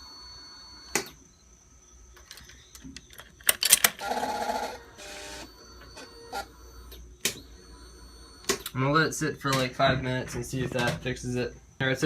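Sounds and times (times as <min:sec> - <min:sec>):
starter relay buzzing chatter: 0:02.1 - 0:07.5.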